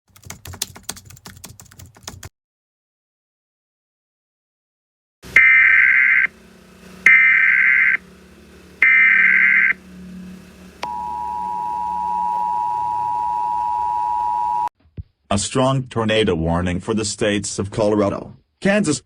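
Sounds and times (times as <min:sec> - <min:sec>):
harsh digital data bursts: 0:05.4 - 0:06.3, 0:07.0 - 0:08.0, 0:08.8 - 0:09.8.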